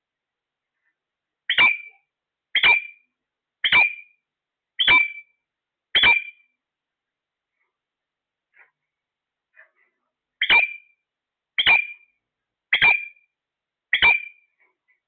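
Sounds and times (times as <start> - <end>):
parrot squawking: 1.5 - 3.0, 3.6 - 4.1, 4.8 - 5.3, 5.9 - 6.4, 10.4 - 10.9, 11.6 - 12.1, 12.7 - 13.2, 13.9 - 14.4.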